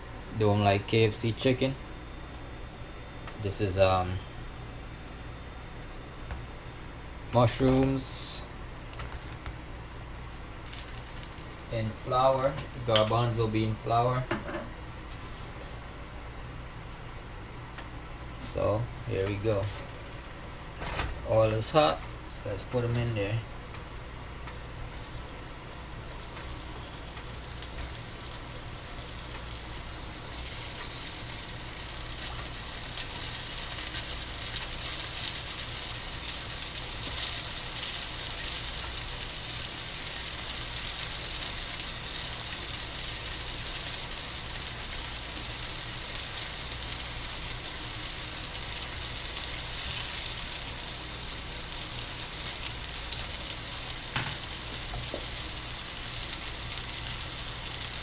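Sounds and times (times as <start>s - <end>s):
food deep-frying in hot oil: 10.6s - 12.8s, 23.5s - 58.0s.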